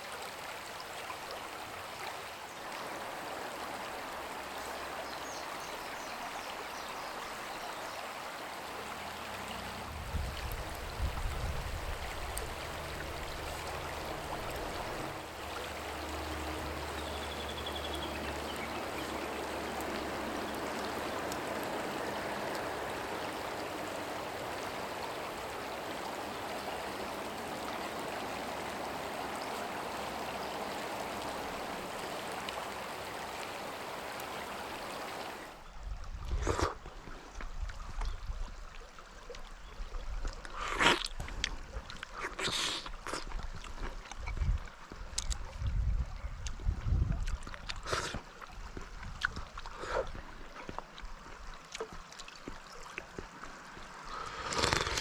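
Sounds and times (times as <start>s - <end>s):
bubbling water: 8.6s - 35.5s, 46.6s - 55.0s.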